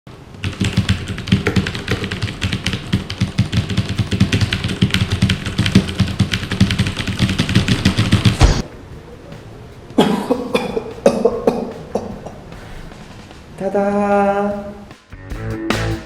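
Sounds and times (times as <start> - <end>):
typing on mechanical keyboard: 0.4 - 8.4.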